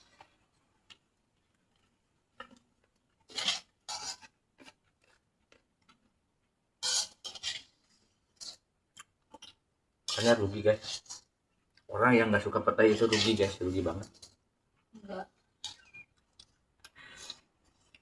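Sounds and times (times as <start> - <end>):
rasping scraping eating noises: 3.2 - 5.6, 6.8 - 8.7, 9.3 - 11.9, 12.8 - 14.4, 15.6 - 18.0.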